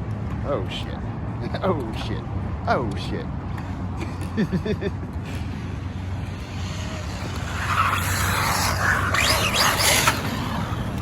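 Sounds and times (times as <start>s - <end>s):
tyres hissing on pavement: 5.6s - 11.0s
rc car electric motor whining: 5.8s - 11.0s.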